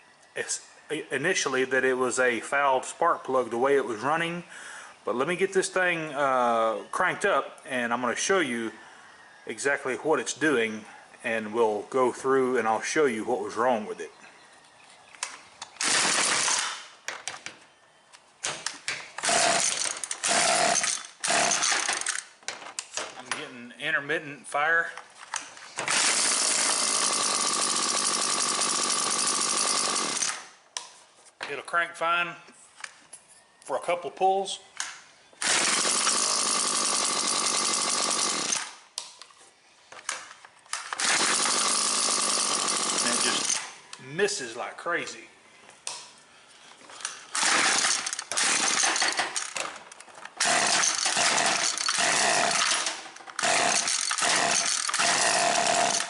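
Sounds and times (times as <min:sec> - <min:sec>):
two-stroke engine firing in bursts: 0:15.8 - 0:16.8, 0:19.2 - 0:22.2, 0:25.9 - 0:30.4, 0:35.4 - 0:38.8, 0:40.9 - 0:43.7, 0:47.3 - 0:49.6, 0:50.4 - 0:56.0.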